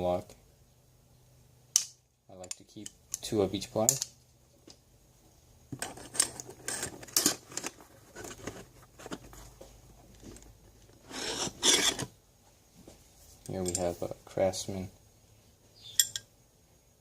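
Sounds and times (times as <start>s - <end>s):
tools rustling in fabric bag: 11.0s - 12.1s.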